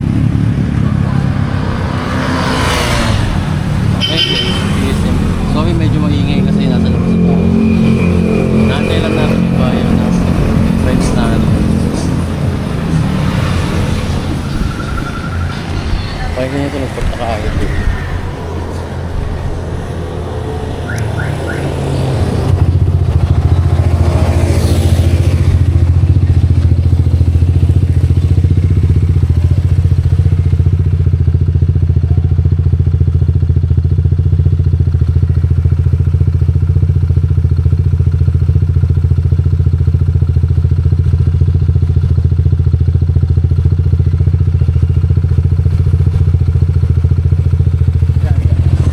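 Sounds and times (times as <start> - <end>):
scooter engine idling: 25.2 - 48.9.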